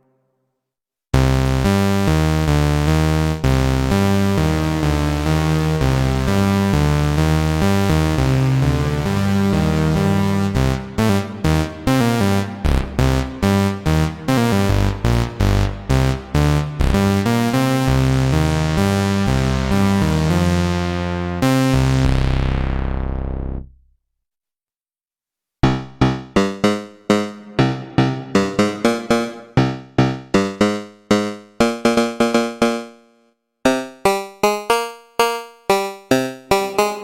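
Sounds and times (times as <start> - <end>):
plucky synth notes: 4.0 - 17.5, 26.0 - 30.6
synth bass phrase: 4.4 - 17.2, 26.4 - 30.4.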